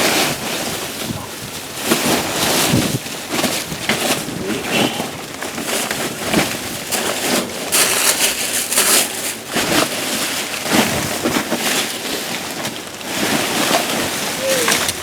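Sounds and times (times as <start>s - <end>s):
wind buffeting microphone: 0.0s - 6.6s
trash rustling and crinkling: 0.0s - 15.0s.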